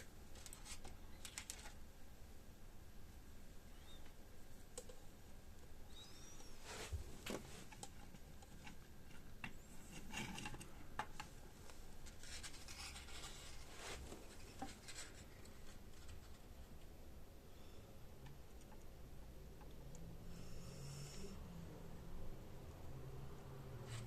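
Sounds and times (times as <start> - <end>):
scratchy rubbing: 12.0 - 16.4.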